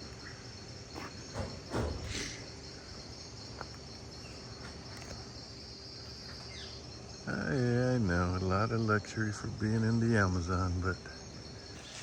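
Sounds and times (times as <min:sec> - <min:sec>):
high-pitched insect chorus: 0:00.0 - 0:12.0.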